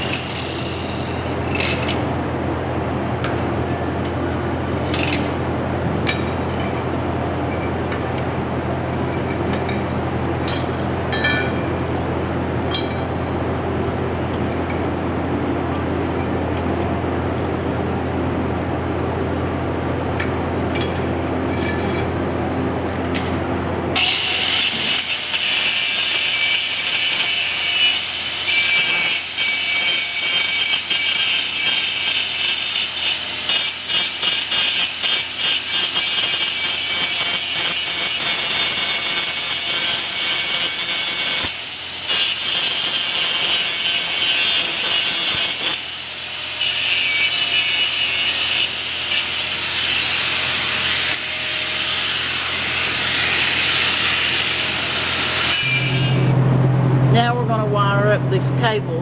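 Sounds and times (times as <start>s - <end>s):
power tool grinding: 24.0s - 56.4s
low steady hum: 56.1s - 59.0s.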